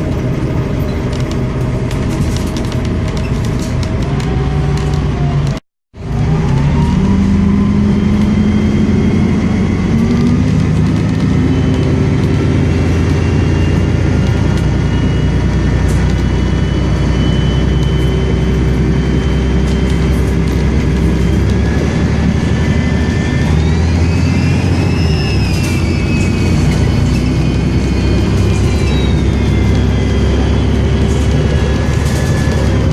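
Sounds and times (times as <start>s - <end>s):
bus engine pulling: 0.0s - 32.9s
high turbocharger whistle: 6.4s - 10.2s, 11.2s - 32.9s.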